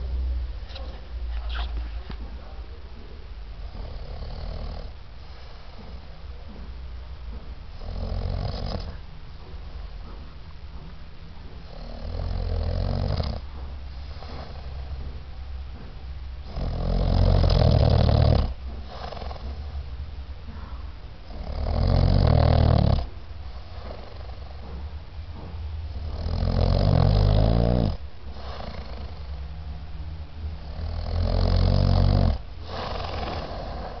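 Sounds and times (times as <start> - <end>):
quiet breathing: 0.0 - 21.8, 22.4 - 34.0
boy snoring: 3.6 - 6.0, 7.8 - 9.0, 11.6 - 15.0, 16.4 - 19.8, 20.5 - 24.8, 26.0 - 29.4, 30.6 - 34.0.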